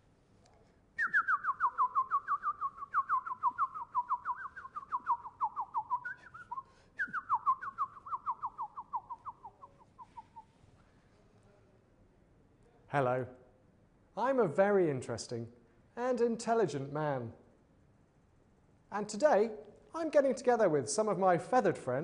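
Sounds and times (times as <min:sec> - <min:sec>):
bird whistling down-slurred notes: 0:01.0 - 0:10.6.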